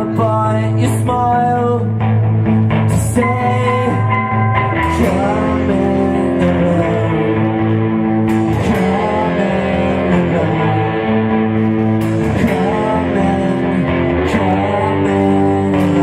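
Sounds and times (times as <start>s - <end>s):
electric guitar chords: 0.0s - 16.0s
rock band playing live: 0.0s - 16.0s.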